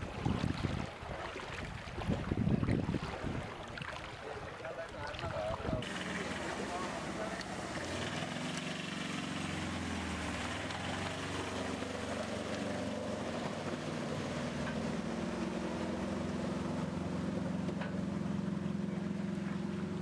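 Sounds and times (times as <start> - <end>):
engine running: 5.8 - 20.0.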